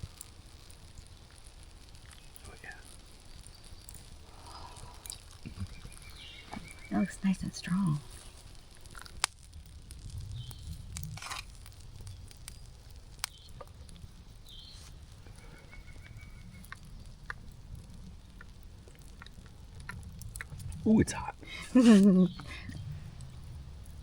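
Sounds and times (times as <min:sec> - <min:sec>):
fire pops: 0:00.0 - 0:24.0
bird chirps: 0:03.2 - 0:08.4, 0:14.4 - 0:16.8, 0:22.1 - 0:23.0
low rumble: 0:16.2 - 0:24.0.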